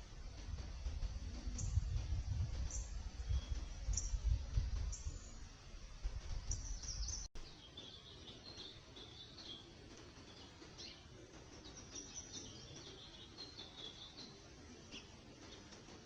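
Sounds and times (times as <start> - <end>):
low rumble: 0.0 - 7.3
faint birds chirping: 0.0 - 16.0.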